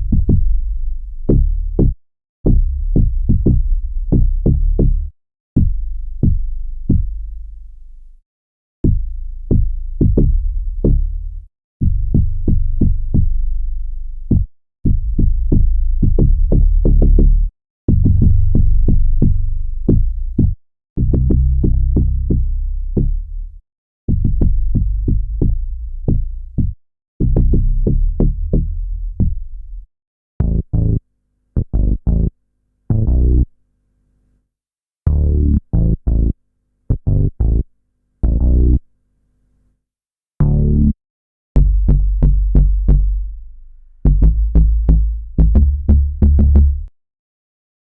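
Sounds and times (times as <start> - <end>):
short low bass notes: 0.0 - 7.4, 8.9 - 29.8, 30.4 - 31.0, 40.4 - 41.0, 41.6 - 46.9.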